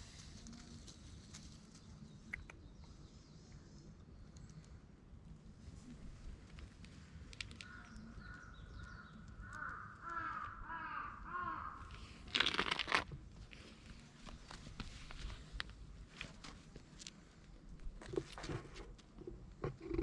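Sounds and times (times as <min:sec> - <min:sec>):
crow cawing: 0:07.6 - 0:12.1.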